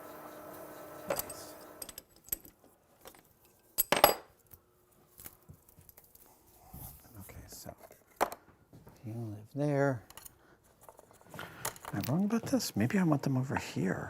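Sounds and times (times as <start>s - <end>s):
motor hum: 0.0s - 1.9s
metal tools clinking: 1.0s - 4.3s.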